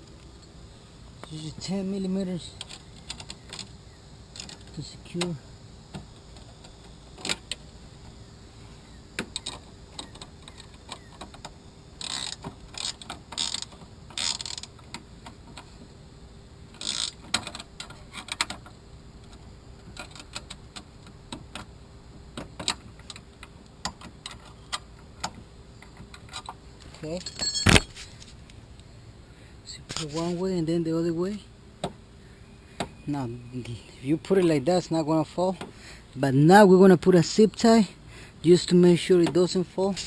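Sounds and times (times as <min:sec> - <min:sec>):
wrench clicking on metal: 0:12.0 - 0:14.7, 0:16.8 - 0:18.5
handling rustles: 0:26.8 - 0:28.6.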